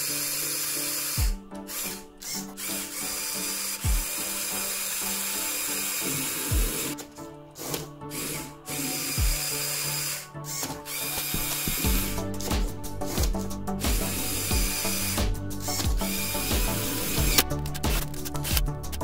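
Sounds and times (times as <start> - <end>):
small electric motor whirring: 0.0 - 7.0, 7.6 - 12.2, 13.0 - 18.7
electronic music with deep bass: 6.1 - 7.0, 10.6 - 19.0.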